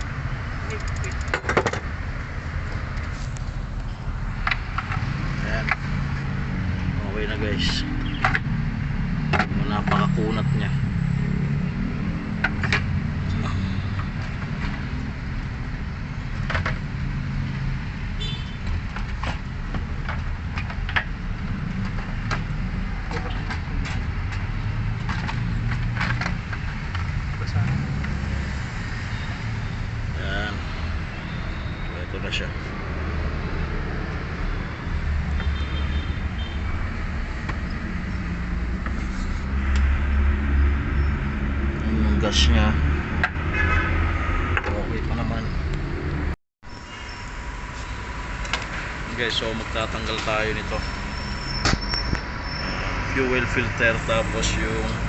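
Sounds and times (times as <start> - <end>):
vehicle engine rumbling: 0.0 - 55.0.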